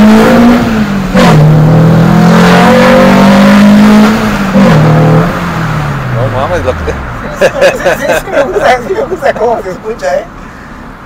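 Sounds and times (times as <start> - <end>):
car engine revving through gears: 0.0 - 7.2.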